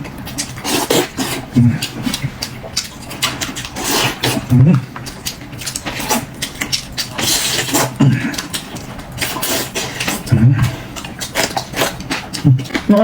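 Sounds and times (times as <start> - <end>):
chewing and smacking: 0.0 - 13.0
low mouth noises: 3.4 - 5.0, 6.0 - 13.0.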